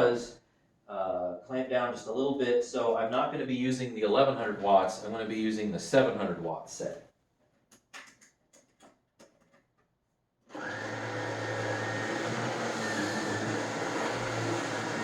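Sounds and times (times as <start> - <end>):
vacuum cleaner running: 10.5 - 15.0.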